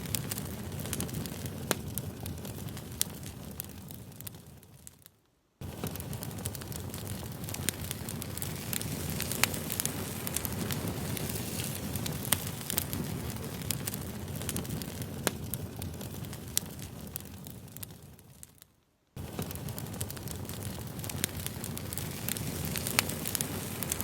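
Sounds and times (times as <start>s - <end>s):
campfire rushing: 0.0s - 18.6s, 19.2s - 24.0s
wood crackling and popping: 0.0s - 24.0s.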